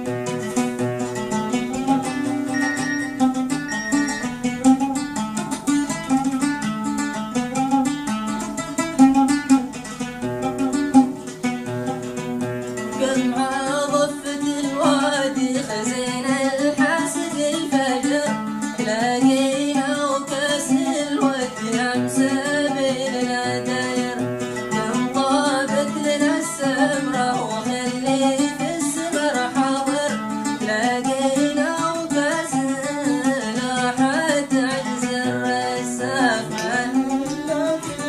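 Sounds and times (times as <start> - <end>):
plucked string melody: 0.0 - 38.0
person singing long wavering notes: 1.6 - 4.7, 12.9 - 38.0.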